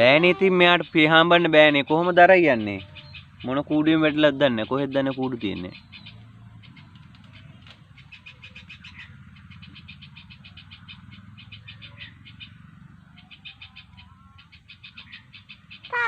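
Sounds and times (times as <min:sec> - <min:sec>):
animal rapid high chirps: 0:13.2 - 0:16.0.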